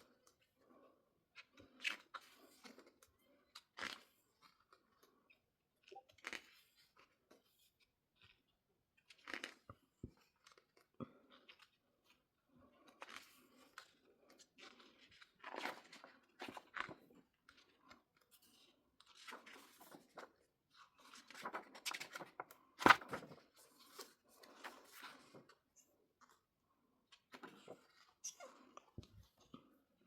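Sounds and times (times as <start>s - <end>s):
paper pages rustling: 13.0s - 18.3s, 19.0s - 20.4s, 21.0s - 25.6s.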